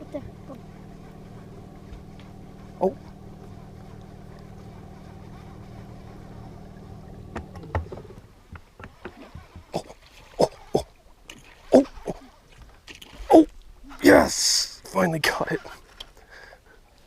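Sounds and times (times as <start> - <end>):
boat motor humming: 0.0 - 12.5
knocks and clatters: 6.6 - 9.8.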